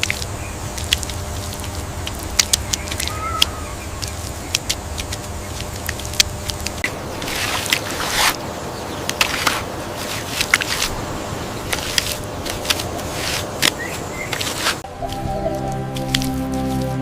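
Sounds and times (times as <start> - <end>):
steady rustling: 0.0 - 17.0
scrapes: 4.0 - 8.4, 9.1 - 11.0, 11.7 - 14.8.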